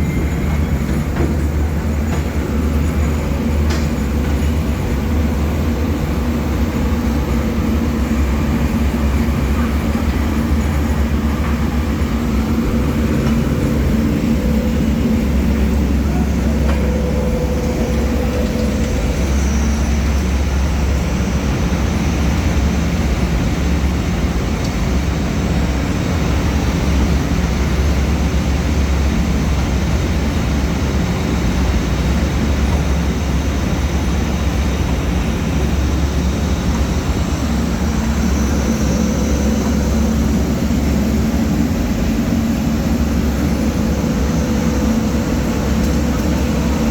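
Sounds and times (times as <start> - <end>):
grinding mill droning: 0.0 - 46.9.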